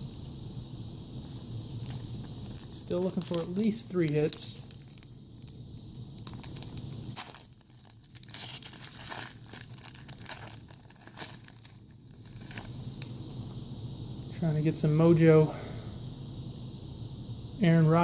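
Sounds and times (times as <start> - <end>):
foil wrapper tearing and crinkling: 1.3 - 13.2.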